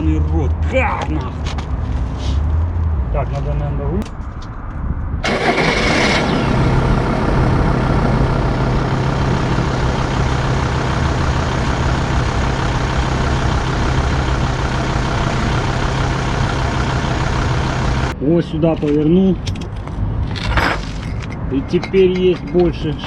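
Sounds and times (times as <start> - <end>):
van engine starting and idling: 5.2 - 18.2.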